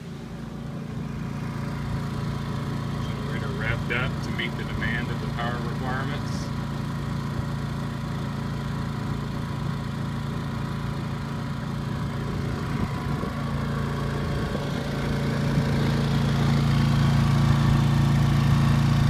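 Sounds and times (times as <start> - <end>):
generator engine running: 0.0 - 19.0.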